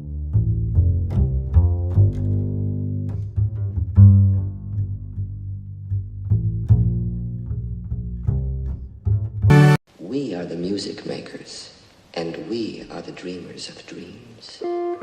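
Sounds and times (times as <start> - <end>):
bowed low strings: 0.0 - 9.8
plucked double bass: 0.0 - 9.8.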